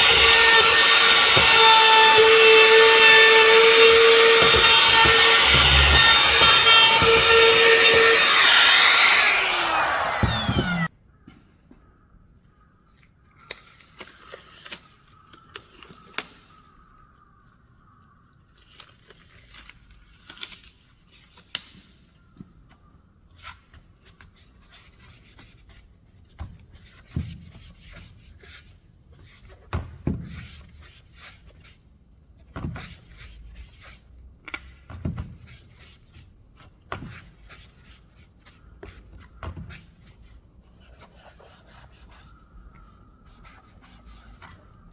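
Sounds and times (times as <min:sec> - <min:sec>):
wood rubbing on wood: 0:00.0 - 0:10.9.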